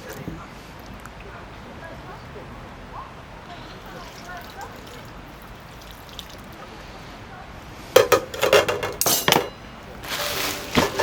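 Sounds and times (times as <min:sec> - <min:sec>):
utensils and dishes clinking: 0:08.0 - 0:11.0
background music: 0:10.1 - 0:11.0.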